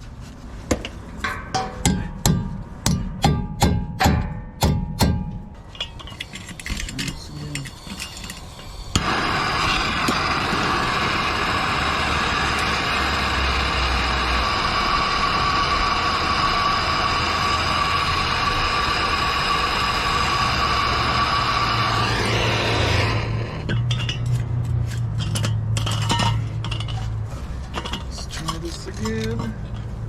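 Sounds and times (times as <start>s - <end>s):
hammer on metal: 1.3s - 5.6s
gas torch hissing: 6.0s - 23.8s.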